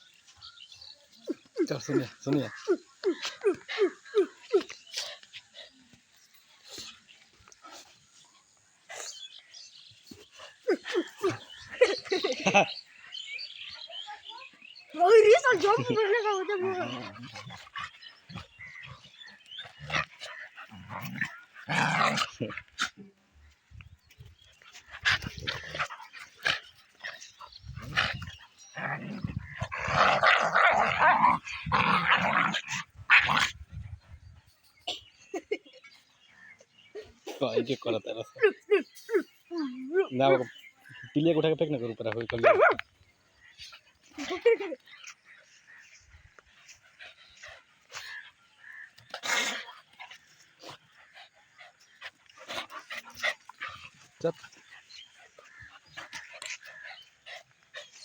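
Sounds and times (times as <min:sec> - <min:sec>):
dog growling: 0:15.4 - 0:23.0, 0:24.9 - 0:33.6
dog barking: 0:42.4 - 0:42.8.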